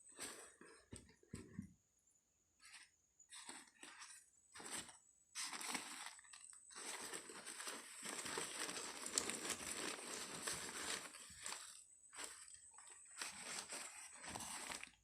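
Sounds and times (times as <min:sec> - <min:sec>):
packaging crinkling: 0:03.4 - 0:15.0.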